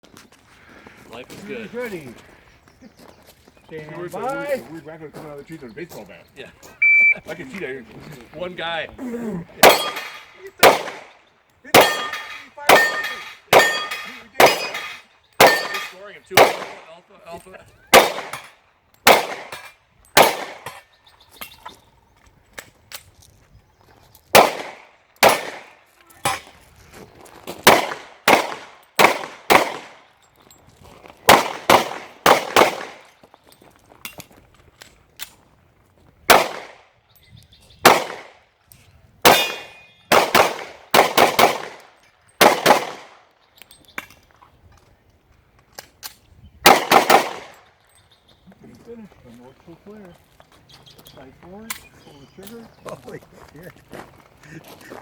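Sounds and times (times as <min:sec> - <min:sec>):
pistol shots: 0:09.6 - 0:17.0, 0:17.9 - 0:20.8, 0:24.3 - 0:26.5, 0:27.6 - 0:30.1, 0:31.3 - 0:33.1, 0:36.3 - 0:36.8, 0:37.8 - 0:38.5, 0:39.2 - 0:43.2, 0:46.6 - 0:47.6.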